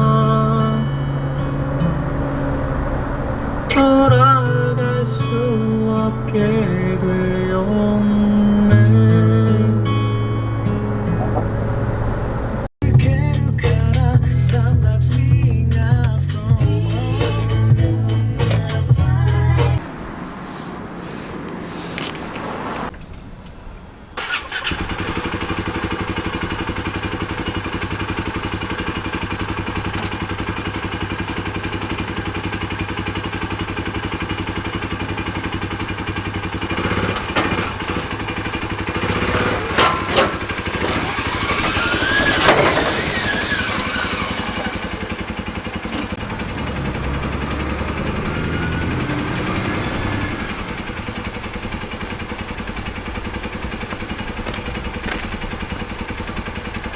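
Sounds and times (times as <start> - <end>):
rising and falling whine: 0.0 - 12.7, 46.2 - 51.5
vehicle engine running: 0.0 - 56.9
knocks: 11.2 - 11.6.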